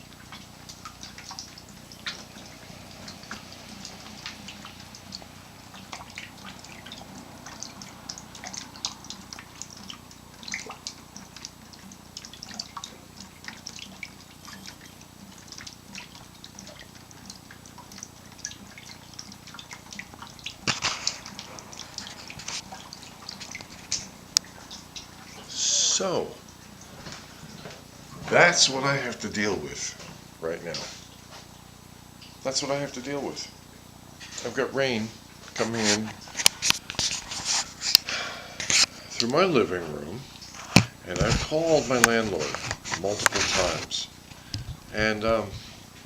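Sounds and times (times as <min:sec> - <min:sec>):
rainwater dripping: 0:00.0 - 0:46.0.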